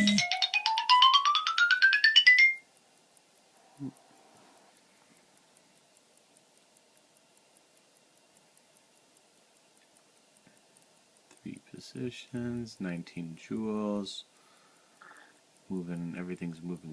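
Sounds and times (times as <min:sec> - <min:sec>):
pocket watch ticking: 0:05.4 - 0:14.1, 0:14.8 - 0:16.9.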